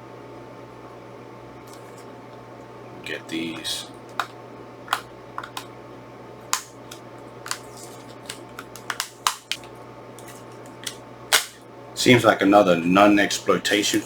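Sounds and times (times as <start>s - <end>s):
plastic case clicks and snaps: 4.9s - 5.7s, 8.2s - 9.7s.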